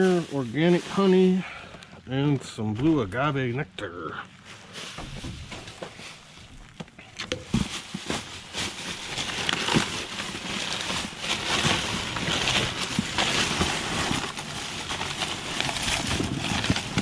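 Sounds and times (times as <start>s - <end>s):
plastic bags crinkling: 0.0s - 17.0s
food packages knocking together: 6.7s - 17.0s.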